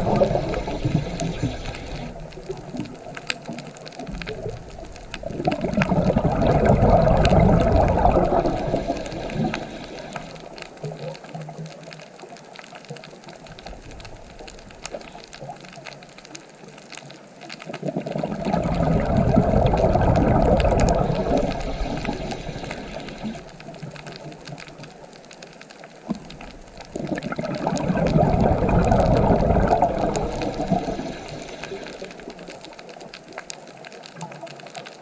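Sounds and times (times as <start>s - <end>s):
ocean surf surging: 0.0s - 2.8s, 5.2s - 10.6s, 18.2s - 23.5s, 27.0s - 32.5s
steady wash of water: 0.0s - 10.9s, 17.8s - 24.6s, 26.6s - 33.6s.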